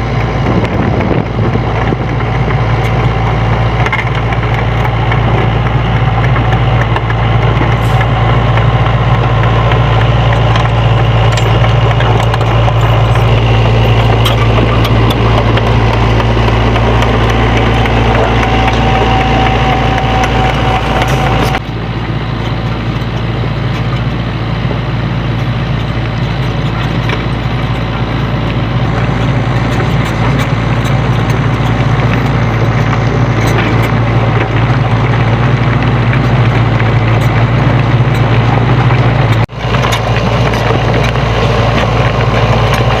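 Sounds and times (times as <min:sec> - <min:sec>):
excavator diesel engine running: 0:00.0 - 0:43.0.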